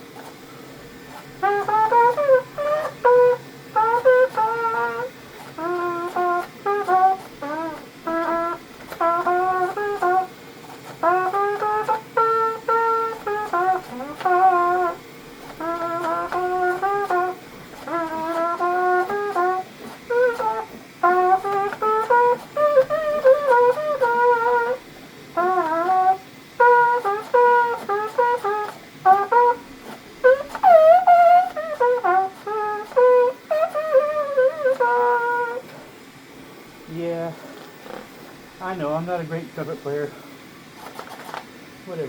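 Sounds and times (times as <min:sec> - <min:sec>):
trumpet playing a melody: 0:00.0 - 0:39.8
person talking: 0:38.6 - 0:40.2.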